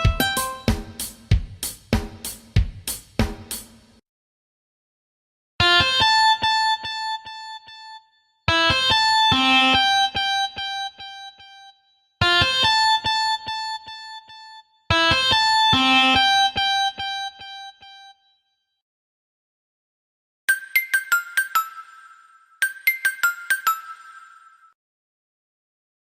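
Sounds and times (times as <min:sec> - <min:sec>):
synthesized phone ringtone melody: 0:00.0 - 0:00.7, 0:20.5 - 0:24.8.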